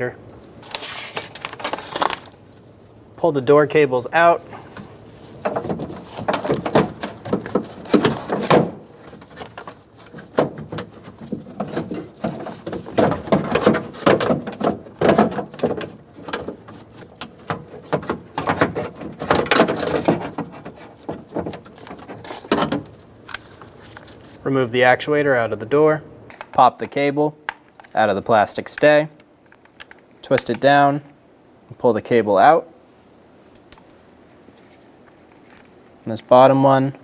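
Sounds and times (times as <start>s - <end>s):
plastic and metal clicking and rattling: 4.7s - 24.1s.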